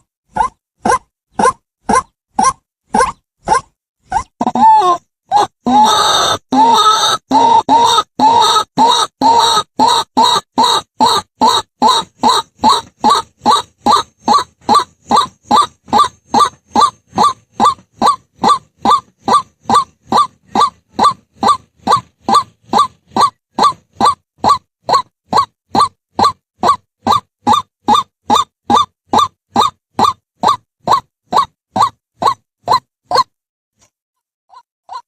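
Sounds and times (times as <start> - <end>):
waterhen calling: 4.4 - 32.4.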